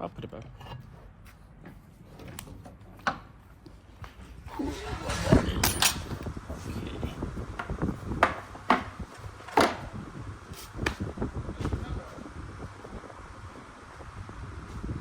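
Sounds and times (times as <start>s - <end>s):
metal tools knocking and clinking: 5.6s - 6.2s.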